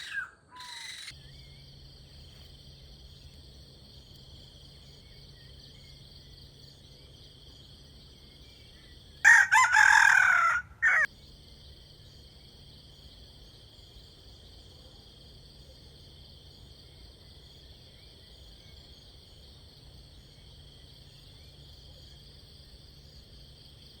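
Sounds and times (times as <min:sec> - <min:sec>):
insects chirring: 0:00.0 - 0:24.0
rooster crowing: 0:09.2 - 0:11.1.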